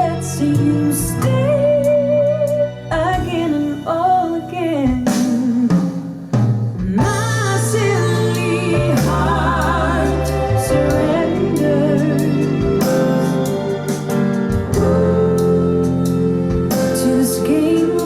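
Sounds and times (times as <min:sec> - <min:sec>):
bass and drums: 0:00.0 - 0:18.0
person singing with vibrato: 0:06.9 - 0:18.0
song over loudspeakers: 0:06.9 - 0:18.0.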